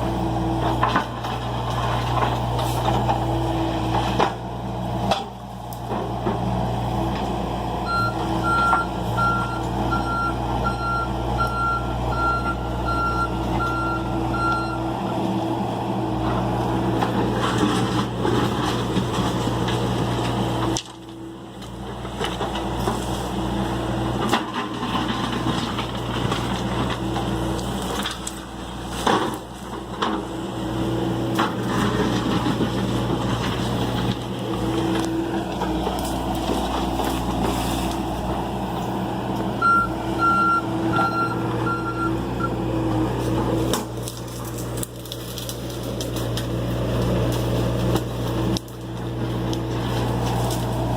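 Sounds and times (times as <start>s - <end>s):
excavator diesel engine running: 0.0s - 50.9s
warning alarm beeps: 7.9s - 14.8s, 39.6s - 42.5s.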